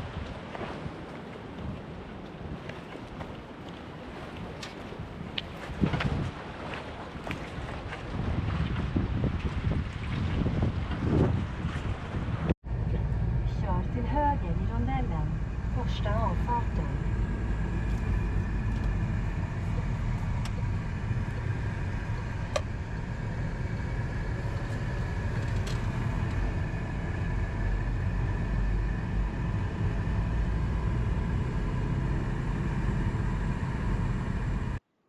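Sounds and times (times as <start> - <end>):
car engine and road rumble: 12.6 - 34.8.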